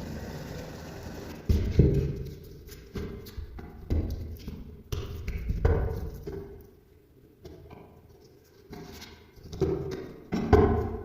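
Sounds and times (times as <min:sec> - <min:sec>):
knocks and thuds of food preparation: 0:01.5 - 0:02.3, 0:09.5 - 0:11.0.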